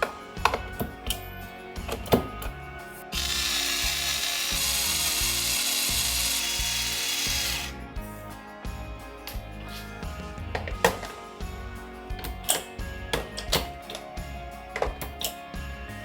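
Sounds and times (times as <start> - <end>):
background music: 0.0 - 16.0
small electric motor running: 3.1 - 7.8.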